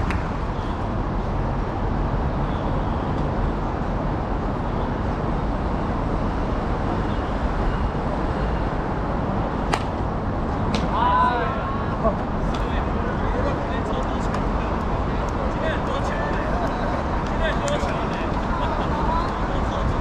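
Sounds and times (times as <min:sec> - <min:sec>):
outdoor background noise: 0:00.0 - 0:20.0
sharp crack: 0:09.7 - 0:10.0.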